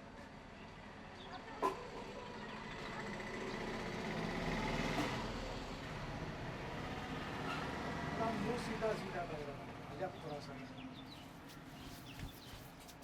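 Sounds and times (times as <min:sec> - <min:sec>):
motor vehicle passing: 0:02.4 - 0:09.9.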